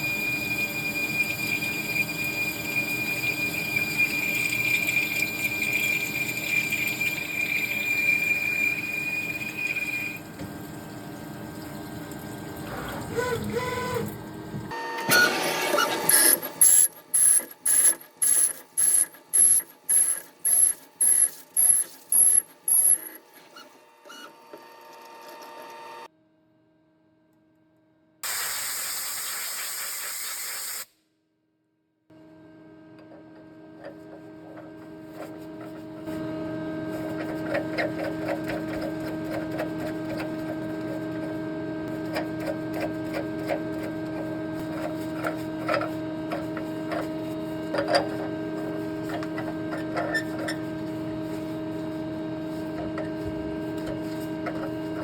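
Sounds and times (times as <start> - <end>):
machine tool whining: 0.0 - 10.2, 12.6 - 23.7.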